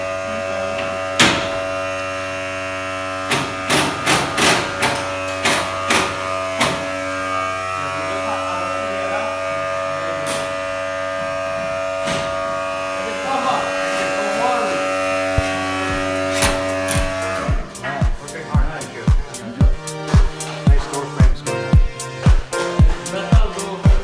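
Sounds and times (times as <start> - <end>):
electric buzzing hum: 0.0 - 24.0
sharp knocks: 0.9 - 1.9, 3.3 - 7.1, 15.4 - 24.0.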